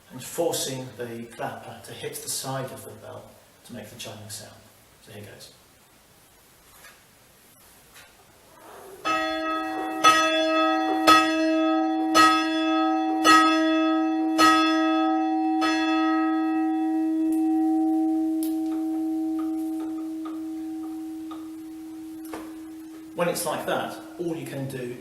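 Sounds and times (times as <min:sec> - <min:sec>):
church bell chiming: 0:09.0 - 0:24.2.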